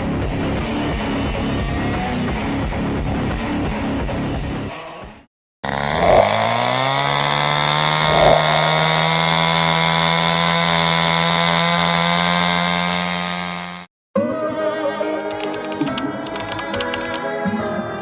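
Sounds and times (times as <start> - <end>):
music: 0.0 - 5.3, 14.2 - 18.0
chainsaw revving: 5.6 - 13.9.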